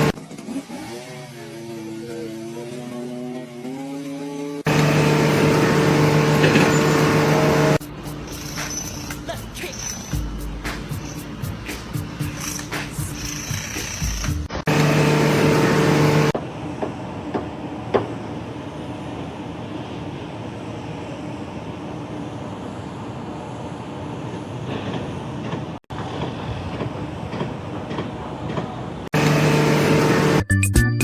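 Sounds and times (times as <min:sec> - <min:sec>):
mechanical rumbling: 0:04.7 - 0:16.4.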